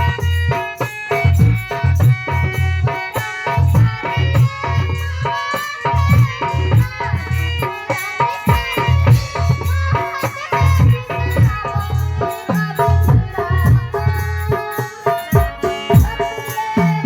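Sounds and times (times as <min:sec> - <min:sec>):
hand percussion: 0:00.0 - 0:17.0
instrumental melody: 0:00.0 - 0:17.0
low drum beat: 0:01.2 - 0:02.9, 0:08.5 - 0:17.0.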